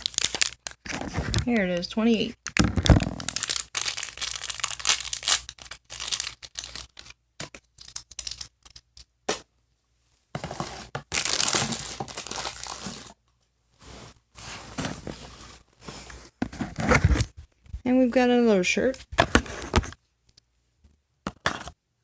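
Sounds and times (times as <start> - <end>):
plastic packaging crinkling and tearing: 0.0 - 1.7, 2.8 - 8.7, 10.7 - 13.2.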